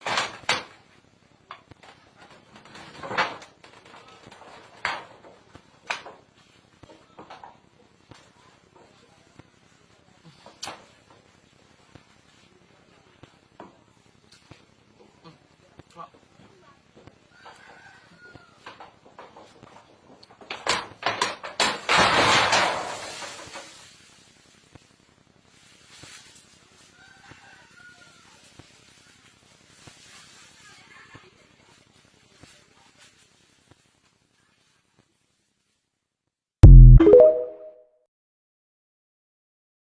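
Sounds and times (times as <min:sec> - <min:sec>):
loud crash with rustling: 0:21.4 - 0:24.1.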